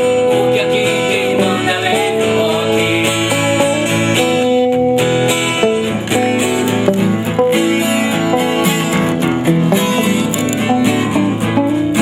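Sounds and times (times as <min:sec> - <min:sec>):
picked guitar melody: 0:00.0 - 0:12.0
strummed guitar chords: 0:00.0 - 0:12.0
rock band playing instrumental: 0:03.3 - 0:12.0.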